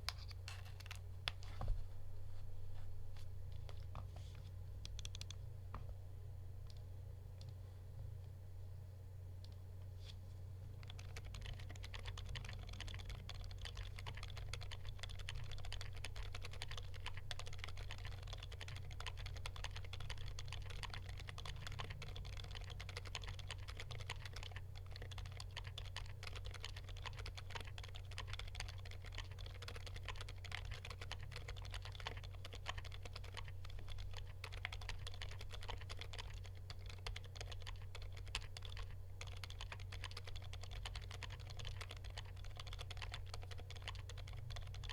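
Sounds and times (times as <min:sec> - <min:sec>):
fast typing on keyboard: 0:10.8 - 0:44.9.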